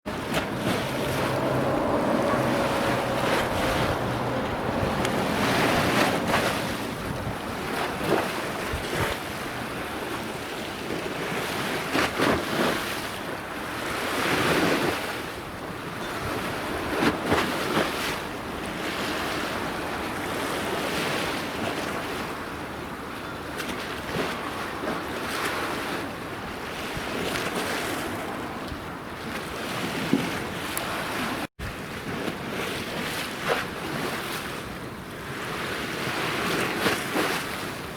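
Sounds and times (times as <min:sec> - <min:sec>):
wind buffeting microphone: 0:00.0 - 0:22.9
sea water rushing: 0:00.1 - 0:23.1.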